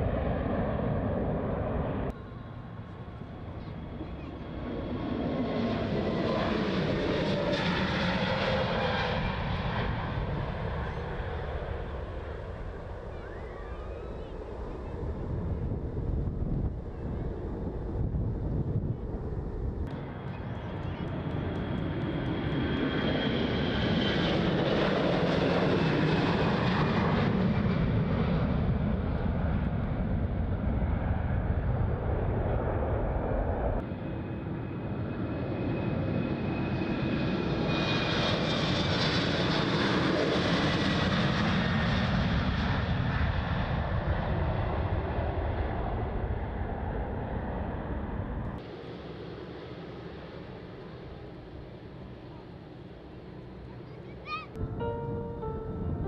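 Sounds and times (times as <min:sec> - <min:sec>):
jet airliner taking off: 0:00.0 - 0:56.0
high engine whine: 0:47.8 - 0:56.0.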